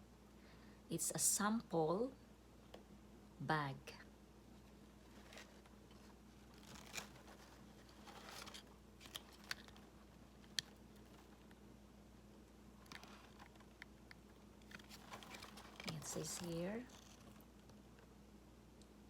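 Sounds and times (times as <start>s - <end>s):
plastic bag rustling and crinkling: 4.6s - 11.6s, 12.8s - 17.7s.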